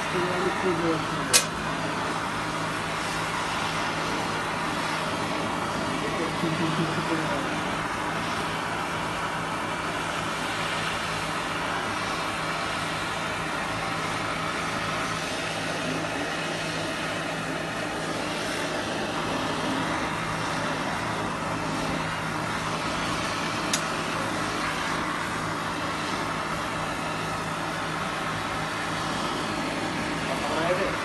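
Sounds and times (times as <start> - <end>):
low machine hum: 0.0 - 31.0
torch flame hissing: 0.0 - 31.0
sharp click: 1.3 - 1.6.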